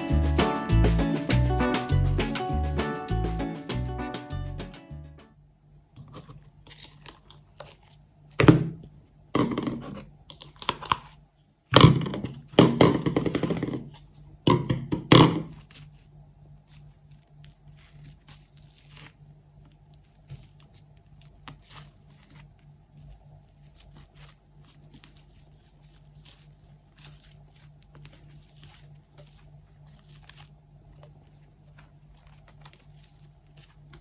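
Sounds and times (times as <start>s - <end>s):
slime squelching and crackling: 6.1s - 9.0s, 9.9s - 14.2s, 15.1s - 34.0s.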